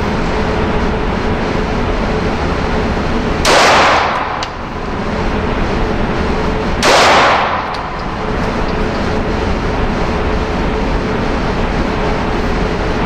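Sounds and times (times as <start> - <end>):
steady background noise: 0.0 - 13.0
pistol shots: 3.4 - 4.6, 6.8 - 8.1.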